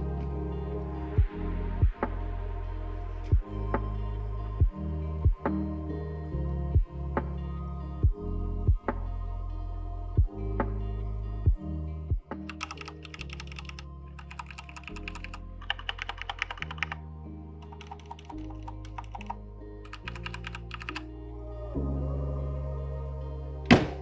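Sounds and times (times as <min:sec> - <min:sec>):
background music: 0:00.0 - 0:24.0
mechanical keyboard typing: 0:12.5 - 0:17.0, 0:17.6 - 0:21.0.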